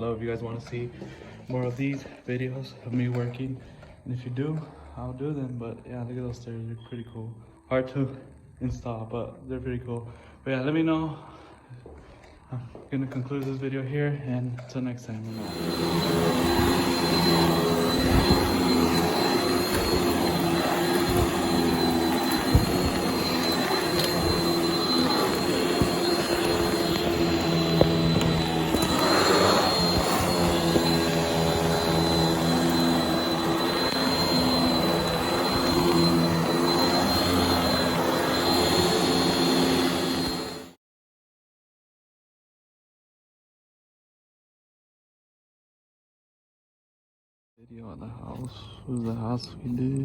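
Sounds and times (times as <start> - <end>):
vacuum cleaner motor running: 15.2 - 40.8.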